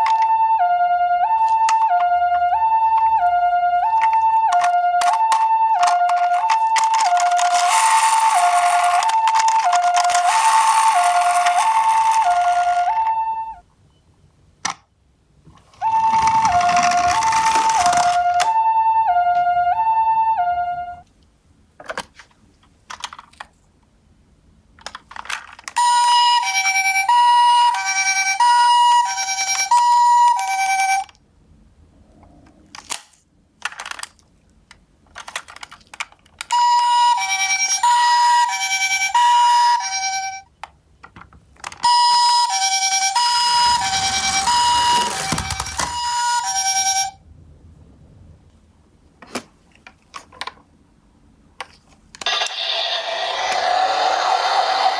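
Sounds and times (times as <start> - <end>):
higher-pitched two-tone siren: 0.0 - 13.6, 15.8 - 21.0, 25.8 - 31.0, 41.9 - 47.2
toy two-tone siren: 0.0 - 13.6, 15.8 - 21.0, 25.7 - 31.1, 36.5 - 40.5, 41.7 - 47.2, 52.2 - 54.9.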